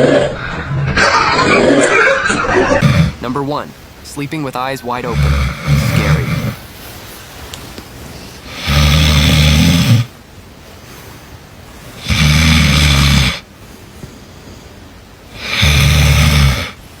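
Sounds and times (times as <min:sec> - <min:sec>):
person snoring: 0:02.7 - 0:03.3, 0:05.0 - 0:06.6, 0:08.5 - 0:10.1, 0:12.0 - 0:13.4, 0:15.4 - 0:16.8.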